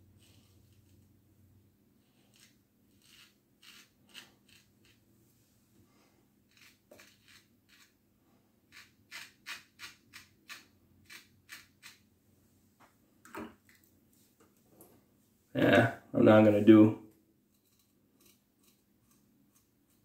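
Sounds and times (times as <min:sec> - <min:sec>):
razor scraping stubble: 0:02.1 - 0:05.0, 0:06.5 - 0:08.0, 0:08.7 - 0:12.0, 0:17.6 - 0:20.0.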